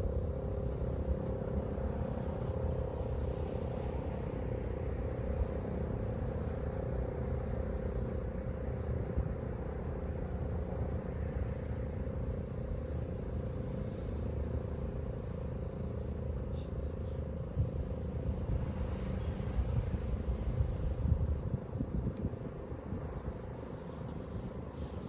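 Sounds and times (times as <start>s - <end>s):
low wind rumble on microphone: 0.0s - 25.0s.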